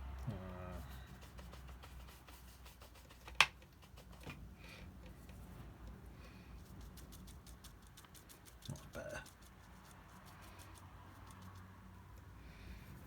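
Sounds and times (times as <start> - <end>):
paintbrush scratching on paper: 0.7 - 4.3, 6.5 - 11.9.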